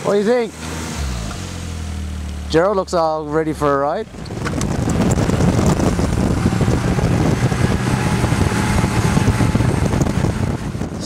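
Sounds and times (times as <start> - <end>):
snowmobile engine drone: 2.5 - 11.0.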